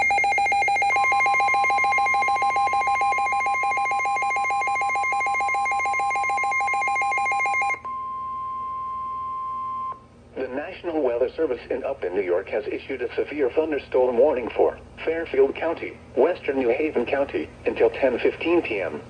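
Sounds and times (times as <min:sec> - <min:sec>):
pulsed ringing alert tone: 0:00.0 - 0:07.8
steady high alarm tone: 0:00.0 - 0:09.9.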